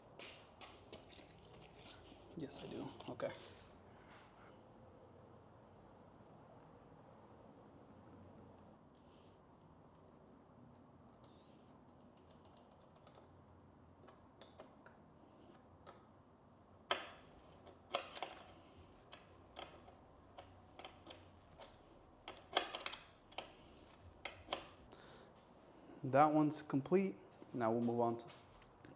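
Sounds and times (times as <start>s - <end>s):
hand tools clicking and tapping: 16.9s - 25.0s.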